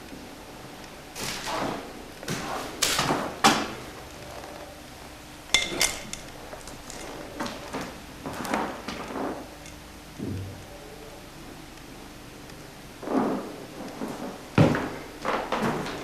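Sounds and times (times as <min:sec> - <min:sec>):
tools knocking and scraping: 0:05.5 - 0:09.8.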